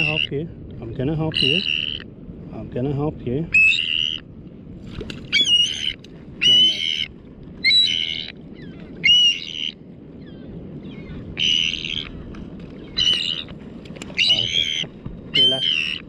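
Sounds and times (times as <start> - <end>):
bird distress squawks: 0.0 - 0.3, 1.3 - 2.1, 3.5 - 4.2, 5.3 - 12.2, 12.9 - 13.5, 14.2 - 16.0.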